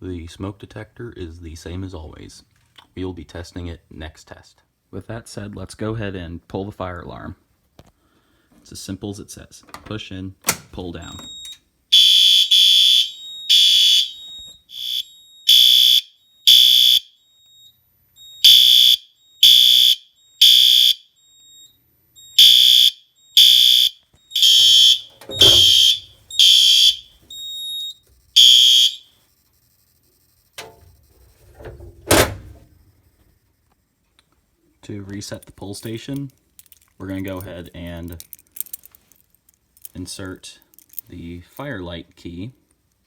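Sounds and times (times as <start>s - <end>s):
fire alarm horn blasts: 11.0s - 29.2s.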